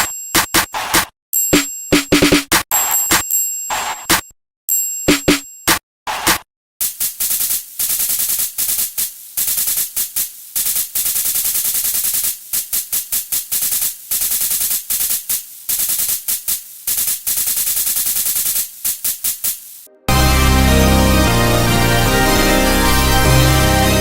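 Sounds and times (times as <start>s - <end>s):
harsh electronic noise bursts: 6.1s - 24.0s.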